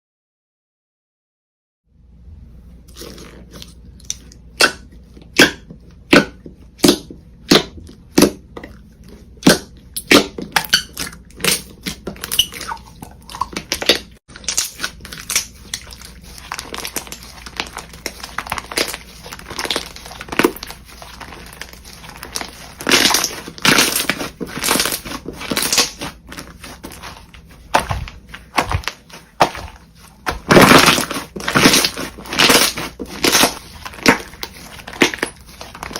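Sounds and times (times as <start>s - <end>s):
slime popping: 9.4s - 35.9s.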